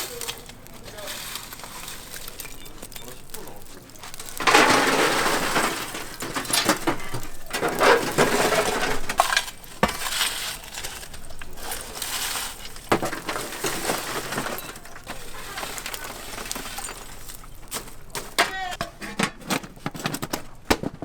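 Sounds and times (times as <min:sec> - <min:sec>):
glassware clinking: 0:01.5 - 0:18.8
clatter: 0:02.4 - 0:18.4.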